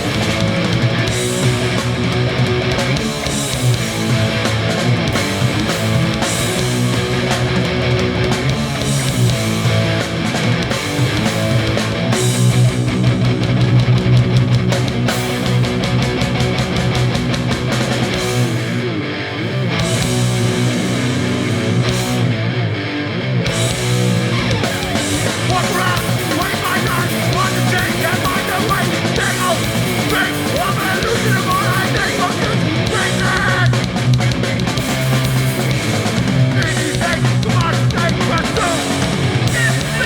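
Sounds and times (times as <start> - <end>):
punk band playing live: 0.0 - 40.0
person singing: 25.2 - 34.1, 36.5 - 40.0.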